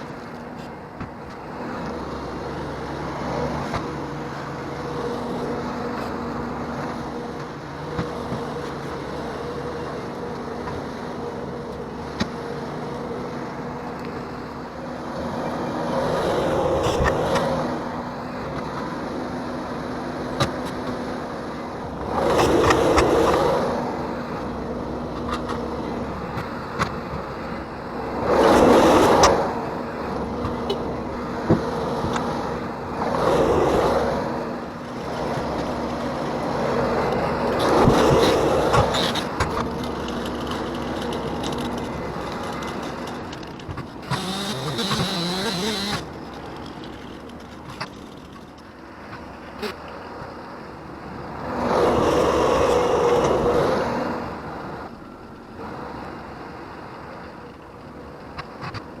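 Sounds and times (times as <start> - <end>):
track loader running: 0.0 - 49.3
mulcher noise surges: 0.0 - 57.3.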